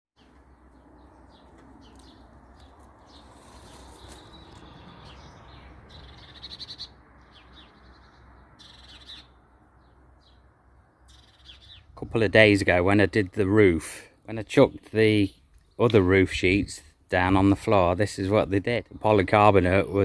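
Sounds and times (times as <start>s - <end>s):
bird trill: 0.2s - 11.9s
birds singing and chirping: 0.2s - 20.0s.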